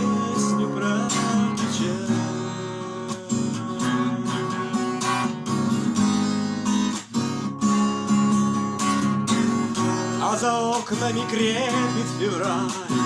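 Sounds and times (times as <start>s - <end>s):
person singing: 0.0s - 5.5s, 9.8s - 13.0s
acoustic guitar strumming: 0.0s - 13.0s.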